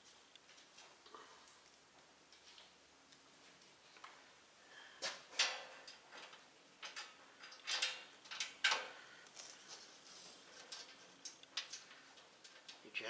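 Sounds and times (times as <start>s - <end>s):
metal bolts and nuts clinking: 5.4s - 8.8s.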